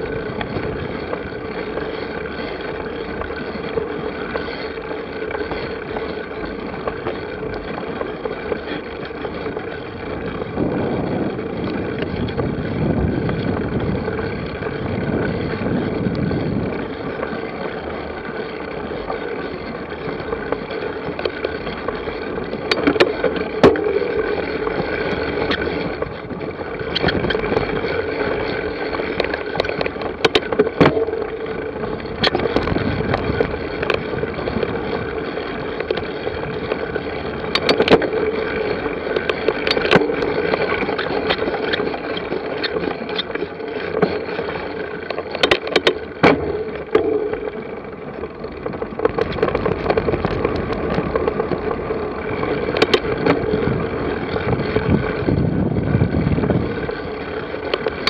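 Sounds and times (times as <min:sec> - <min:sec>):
tyre and wind noise: 0:00.0 - 0:58.0
bike rattling knocks: 0:39.1 - 0:47.5.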